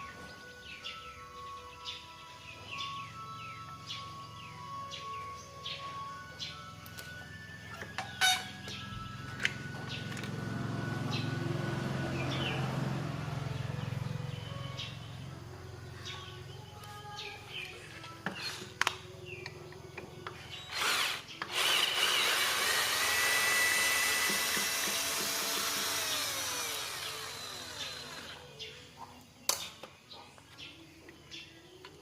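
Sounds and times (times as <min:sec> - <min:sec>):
electric power tool running: 0:07.7 - 0:14.2, 0:20.6 - 0:28.7.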